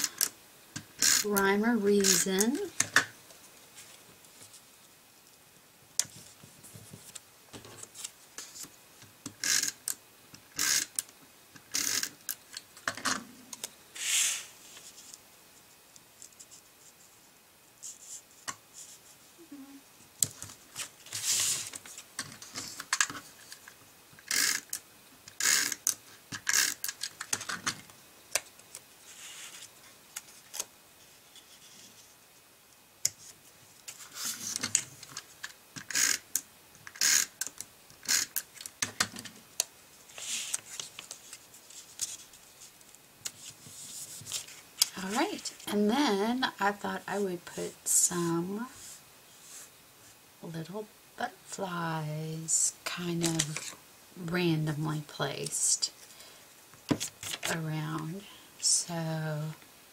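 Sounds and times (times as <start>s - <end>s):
paper rustling: 40.1s - 45.6s, 56.9s - 57.6s.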